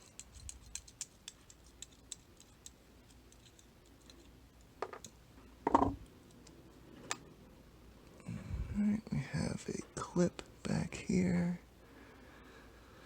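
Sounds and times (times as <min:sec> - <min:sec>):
loud knocks: 0:05.7 - 0:06.0.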